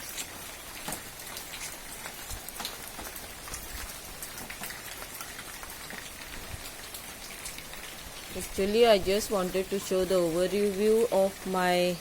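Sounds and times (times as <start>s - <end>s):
heavy rain: 0.0s - 12.0s
raindrops ticking: 0.0s - 12.0s.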